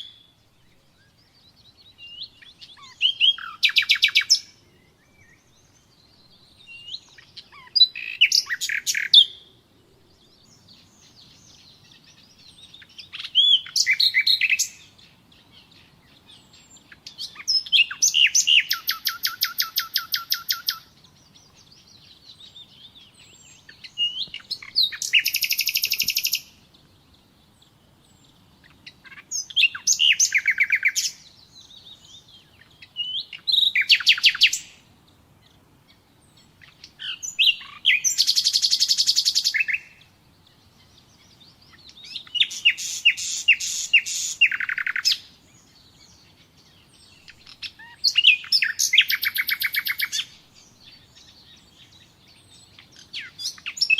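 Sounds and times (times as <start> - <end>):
nightingale singing trills: 0.0 - 53.9.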